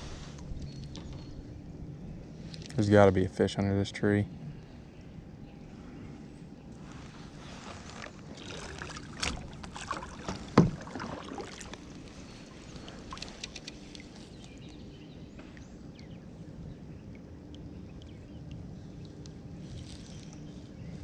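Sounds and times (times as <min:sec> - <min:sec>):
knocks and rattles in kayak: 0:07.7 - 0:13.9
light clicks: 0:12.9 - 0:14.8.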